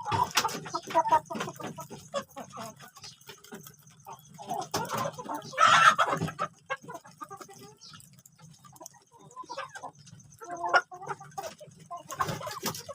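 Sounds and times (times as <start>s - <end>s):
chickens clucking: 0.0s - 12.9s.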